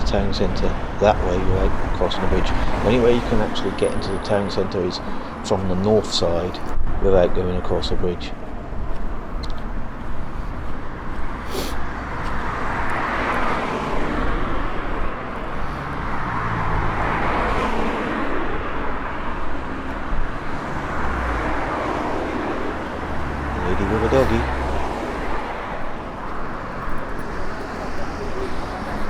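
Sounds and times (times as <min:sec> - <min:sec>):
cars passing close by: 0:00.0 - 0:29.0.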